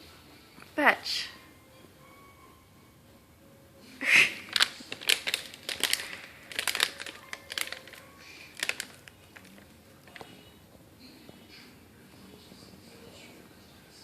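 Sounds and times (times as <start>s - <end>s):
crinkling rustles and taps: 4.5s - 11.4s.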